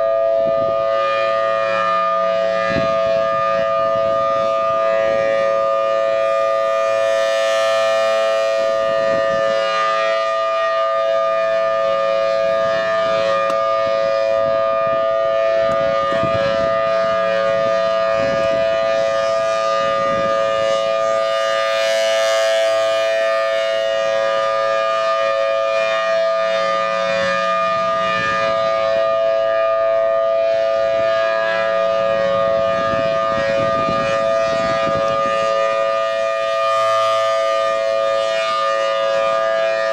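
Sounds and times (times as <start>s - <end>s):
warning siren steady chord: 0.0s - 39.9s.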